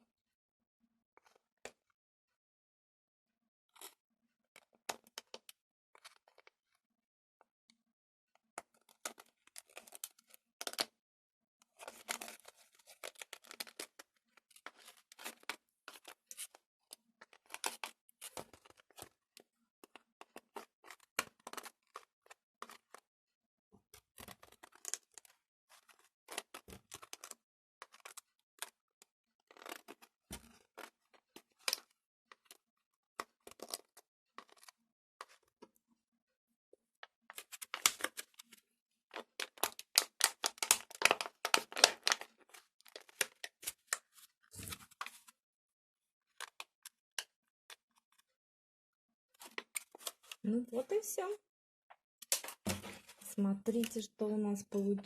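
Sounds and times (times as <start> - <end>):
slime clicks and crackles: 39.2 - 42.3.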